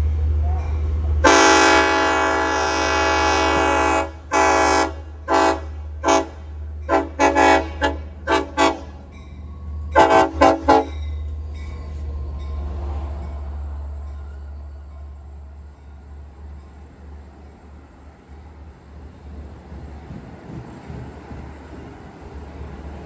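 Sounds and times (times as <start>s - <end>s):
train horn toots: 0.0s - 9.1s, 9.9s - 11.1s
low train rumble: 0.0s - 23.0s.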